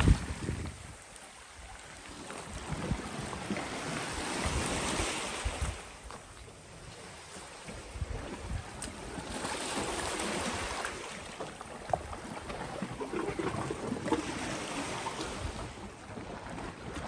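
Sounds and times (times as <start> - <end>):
wind buffeting microphone: 0.0 - 1.8, 2.4 - 6.2, 7.7 - 10.8
small waves washing ashore: 0.0 - 17.0.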